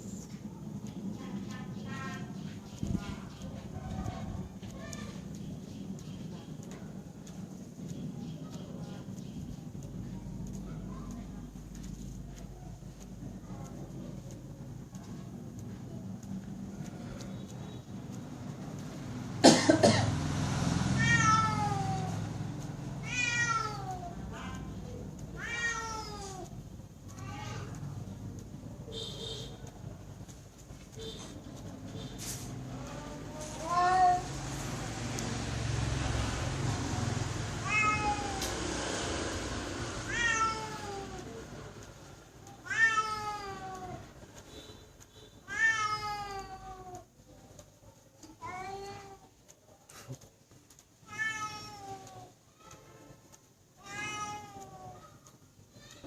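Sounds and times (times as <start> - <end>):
cat meowing: 21.0 - 22.1, 23.0 - 24.1, 25.4 - 26.4, 37.6 - 38.5, 40.0 - 41.2, 42.6 - 44.0, 45.4 - 47.0, 51.0 - 52.3, 53.8 - 55.0.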